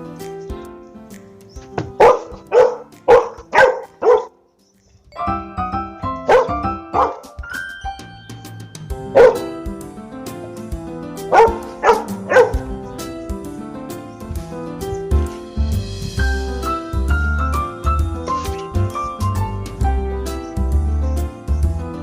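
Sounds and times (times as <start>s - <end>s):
background music: 0.0s - 22.0s
dog barking: 1.8s - 4.4s, 6.2s - 7.3s, 9.1s - 9.6s, 11.3s - 12.7s.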